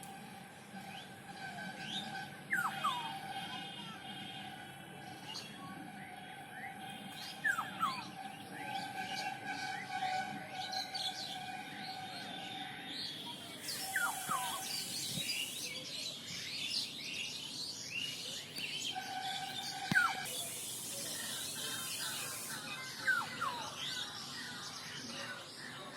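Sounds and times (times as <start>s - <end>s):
birds chirping and calling: 1.8s - 3.1s, 13.6s - 15.8s
brief high hiss: 13.7s - 15.7s
high whistle-like tone: 13.8s - 15.4s.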